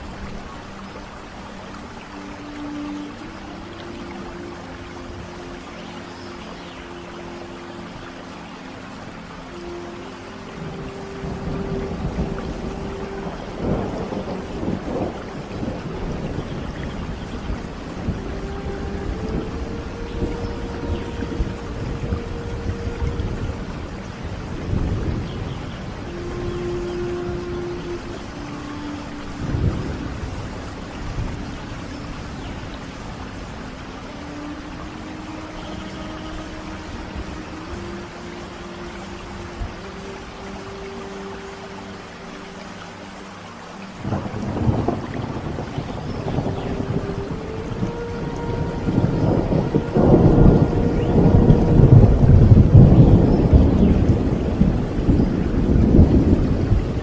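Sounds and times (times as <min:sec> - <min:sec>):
steady rain: 0:00.0 - 0:57.0
thunder rumbling: 0:10.6 - 0:28.2, 0:44.0 - 0:57.0.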